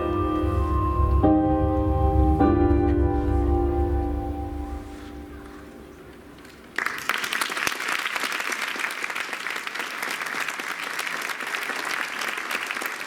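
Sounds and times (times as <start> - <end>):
audience applauding: 6.4 - 13.0.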